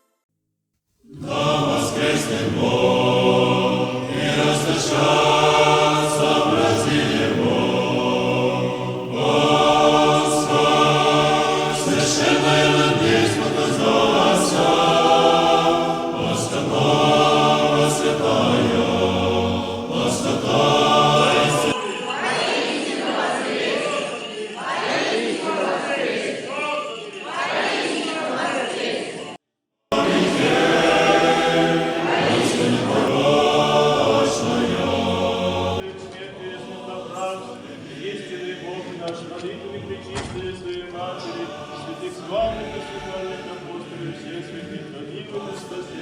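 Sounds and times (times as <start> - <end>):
choir singing a chant: 1.0 - 46.0.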